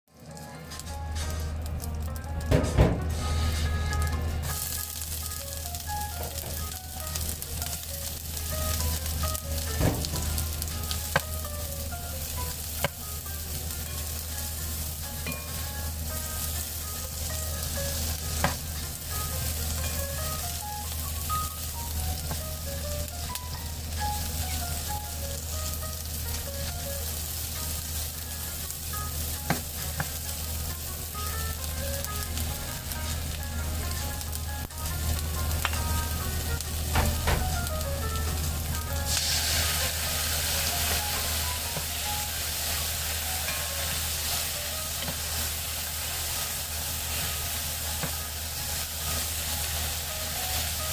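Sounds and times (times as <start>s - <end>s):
light background music: 0.1s - 50.9s
vegetables sizzling in a pan: 0.2s - 50.9s
utensil knocking on pan: 29.4s - 30.2s, 36.9s - 37.6s.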